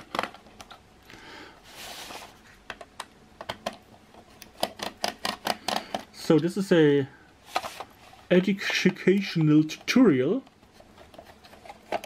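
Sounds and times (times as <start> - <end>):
screwdriver clicking on plastic: 4.4 - 6.1.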